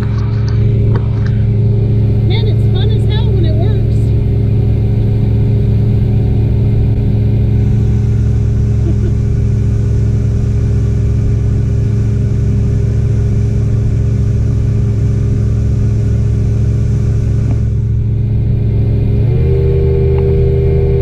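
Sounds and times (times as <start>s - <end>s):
boat engine droning: 0.0s - 21.0s.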